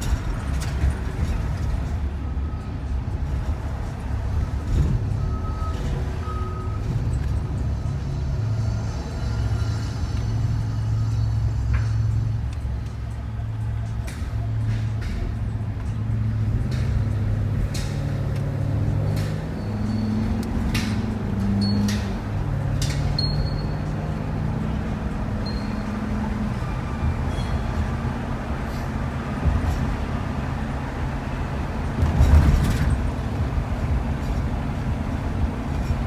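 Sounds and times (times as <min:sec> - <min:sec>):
road noise: 0:00.0 - 0:36.0
van engine hum: 0:00.0 - 0:36.0.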